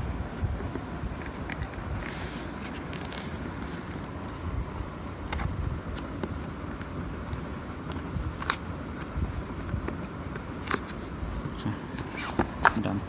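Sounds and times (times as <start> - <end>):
packaging clicks: 5.2 - 11.0.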